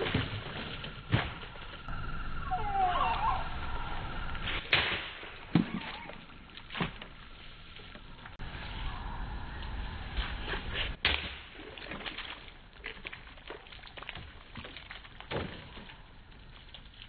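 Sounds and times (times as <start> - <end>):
bird chirping: 1.8 - 4.5.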